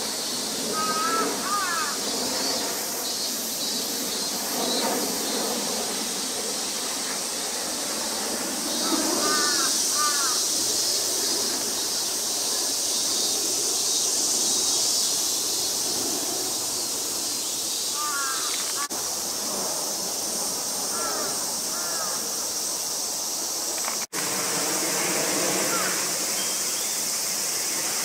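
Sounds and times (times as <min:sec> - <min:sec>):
steady high hiss: 0:00.0 - 0:28.0
bird calling: 0:00.7 - 0:04.9, 0:08.7 - 0:15.7, 0:17.4 - 0:18.9, 0:25.7 - 0:27.0.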